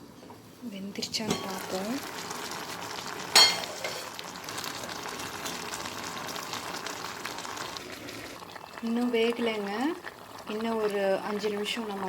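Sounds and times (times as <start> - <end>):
water simmering in pot: 1.1 - 12.0
metal pot lid clanking: 1.2 - 1.7, 3.3 - 4.1.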